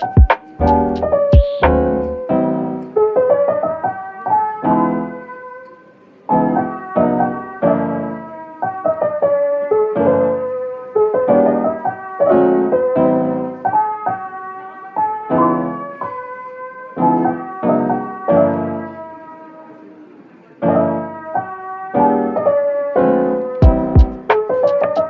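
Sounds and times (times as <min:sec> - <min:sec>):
piano music: 0:00.0 - 0:19.5, 0:20.6 - 0:25.0.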